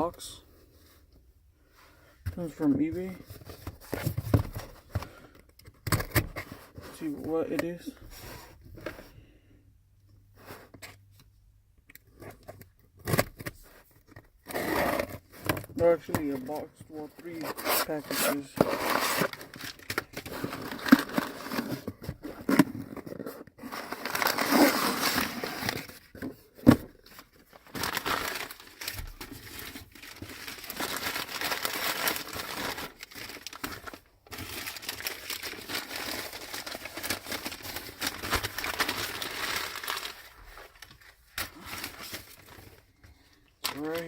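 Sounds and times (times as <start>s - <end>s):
packaging crinkling and tearing: 14.5s - 26.2s, 27.0s - 42.8s, 43.6s - 44.0s.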